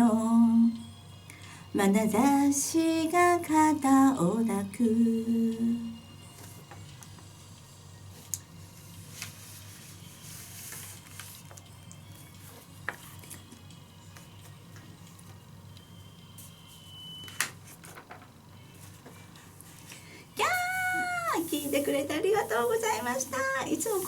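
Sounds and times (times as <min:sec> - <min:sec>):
steady low hum: 0:00.0 - 0:11.2.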